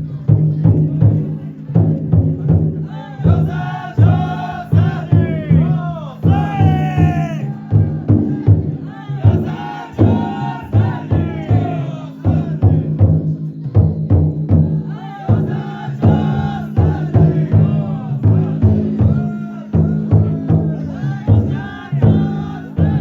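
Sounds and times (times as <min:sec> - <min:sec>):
people chanting and singing: 0:00.0 - 0:23.0
taiko drum beating: 0:00.0 - 0:23.0.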